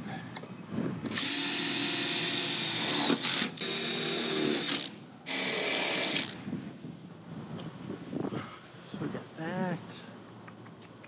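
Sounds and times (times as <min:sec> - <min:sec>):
power drill whining: 0:01.1 - 0:06.4.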